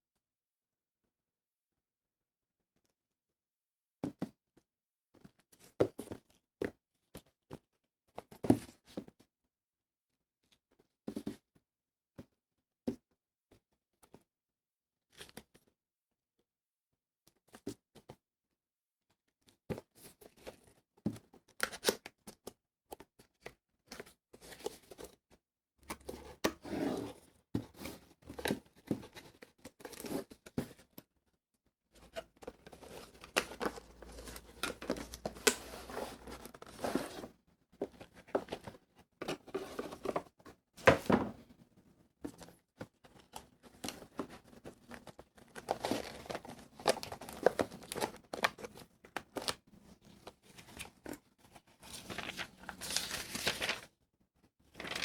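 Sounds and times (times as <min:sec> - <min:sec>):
plastic wrapping crinkling and tearing: 0:52.2 - 0:53.8.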